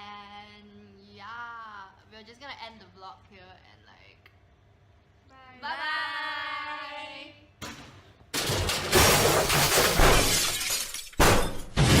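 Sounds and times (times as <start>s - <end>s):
glass shattering: 8.4s - 12.0s.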